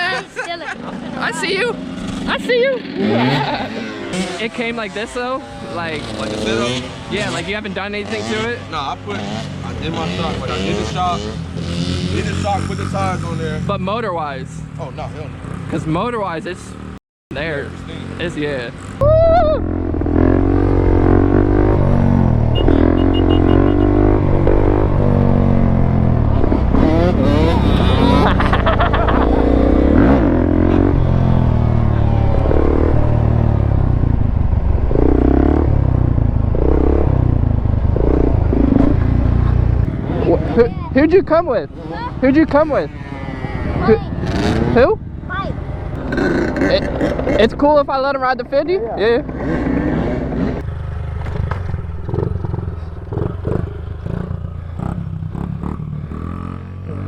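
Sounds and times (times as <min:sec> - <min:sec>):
dirt bike engine revving: 0:00.0 - 0:57.0
dirt bike engine idling: 0:50.6 - 0:56.9.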